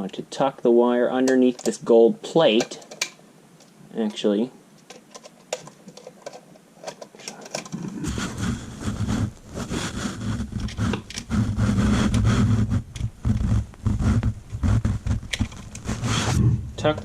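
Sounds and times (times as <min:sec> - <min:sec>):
rubbing and scraping: 0:04.8 - 0:17.0.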